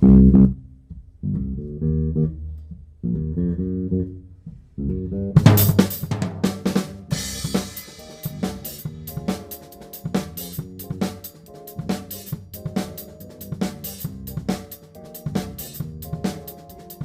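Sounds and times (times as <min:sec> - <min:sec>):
low pitched instrument phrases: 0:00.0 - 0:06.0
big band music: 0:05.4 - 0:17.0
drum kit with cymbal crashes: 0:05.4 - 0:17.0.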